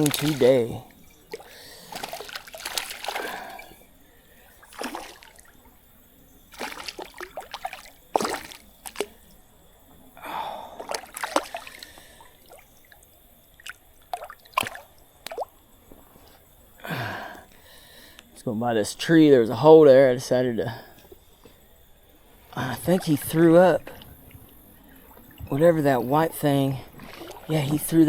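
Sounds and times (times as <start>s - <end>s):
creek water splashing: 0.0s - 9.4s, 10.6s - 15.5s, 22.6s - 28.0s.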